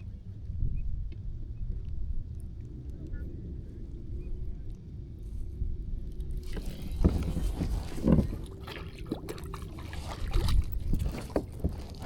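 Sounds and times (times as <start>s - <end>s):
knocks and scrapes in kayak: 6.4s - 12.0s
water sloshing: 6.4s - 12.0s.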